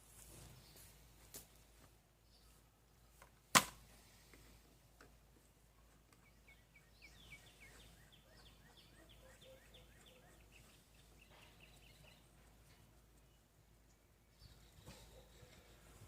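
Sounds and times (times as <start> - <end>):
bird chirping: 5.8 - 16.0.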